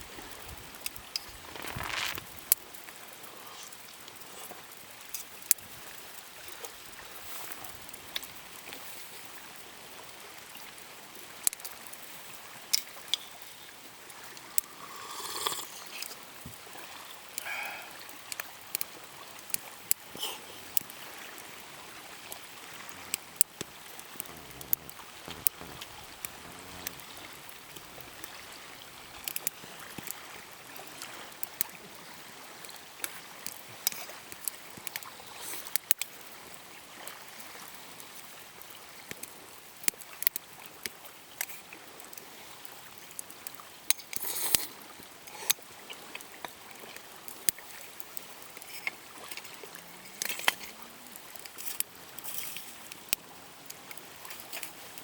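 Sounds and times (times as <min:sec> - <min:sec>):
steady rain: 0:00.0 - 0:15.2, 0:16.0 - 0:43.8, 0:46.3 - 0:55.0
short rustling noise: 0:01.2 - 0:02.5.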